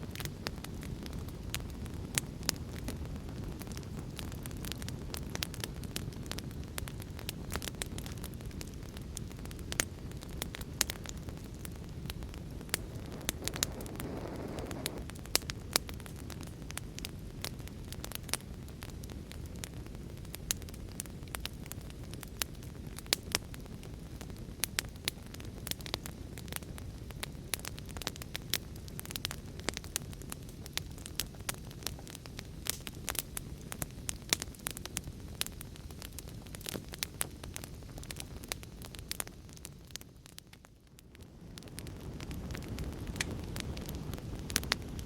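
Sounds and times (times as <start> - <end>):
fire crackling and popping: 0.0 - 45.0
low rumble: 12.5 - 15.0
soft rush: 12.8 - 15.0.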